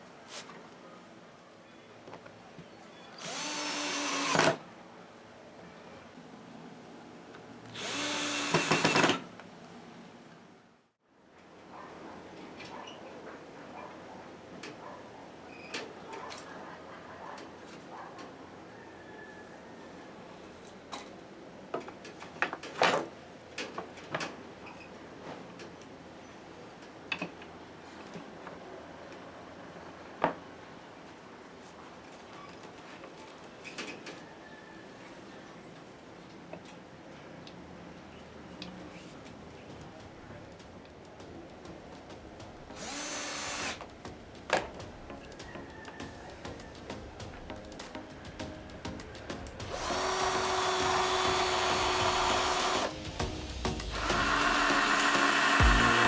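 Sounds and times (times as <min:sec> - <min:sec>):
power drill whining: 0:03.2 - 0:04.6, 0:07.7 - 0:09.2, 0:42.8 - 0:43.8, 0:49.7 - 0:52.9, 0:53.9 - 0:56.0.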